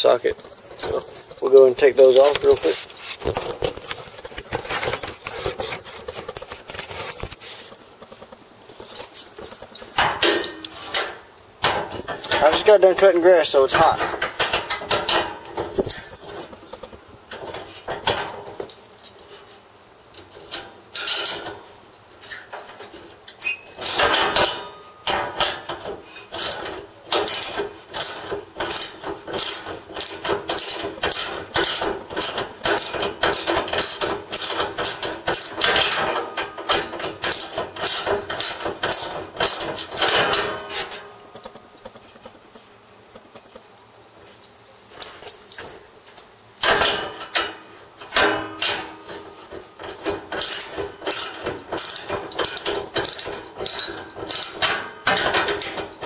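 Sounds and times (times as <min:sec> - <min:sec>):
socket ratchet wrench clicking: 0:23.8 - 0:24.5, 0:26.4 - 0:36.0, 0:37.2 - 0:40.3, 0:50.4 - 0:55.8.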